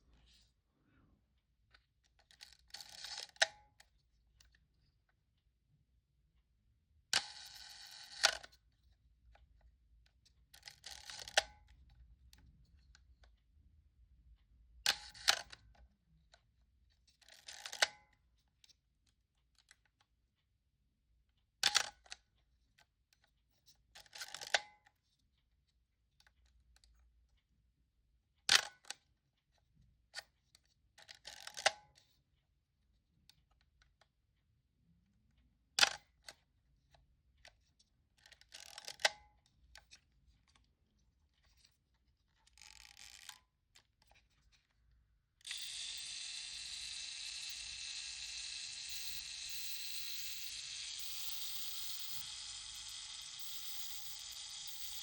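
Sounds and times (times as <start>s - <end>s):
film advance lever whirr: 2.3s - 3.5s, 7.2s - 8.5s, 10.6s - 11.4s, 14.9s - 15.6s, 17.2s - 17.9s, 42.5s - 43.4s, 45.4s - 55.0s
camera shutter click: 45.4s - 55.0s.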